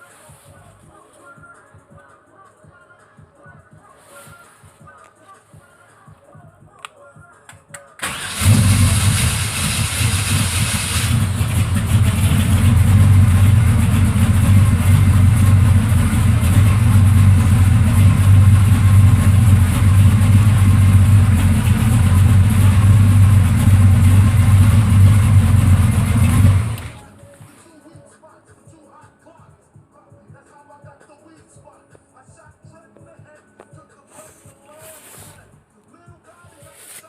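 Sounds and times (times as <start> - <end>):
car engine starting and idling: 8.0 - 27.1.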